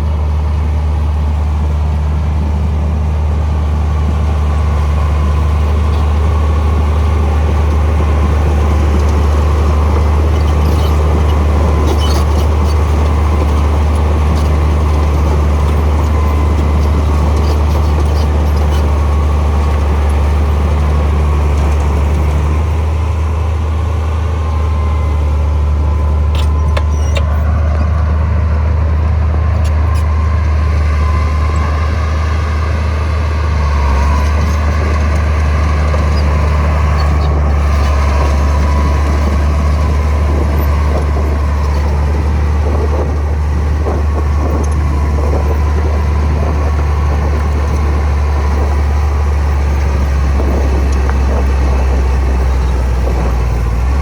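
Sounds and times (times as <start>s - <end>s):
diesel machine droning: 0.0s - 54.0s.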